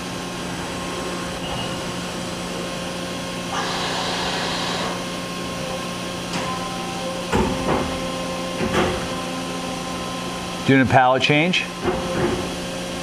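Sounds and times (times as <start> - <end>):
machine electrical hum: 0.0 - 13.0.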